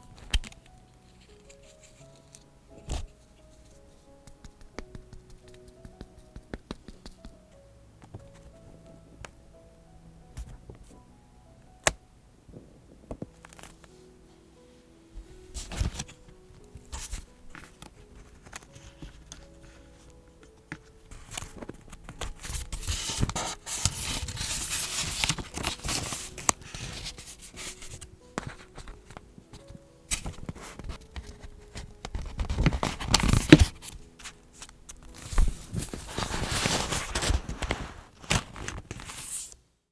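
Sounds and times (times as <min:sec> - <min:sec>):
paper rustling and scraping: 0:13.1 - 0:14.1, 0:15.3 - 0:39.6.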